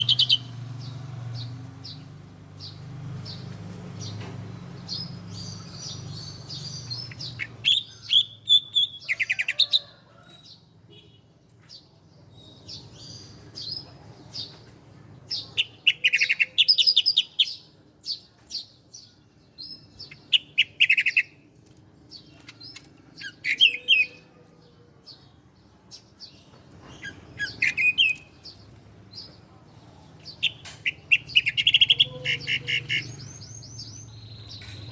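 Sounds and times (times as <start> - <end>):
bird sharp rapid chirps: 0.0 - 4.2.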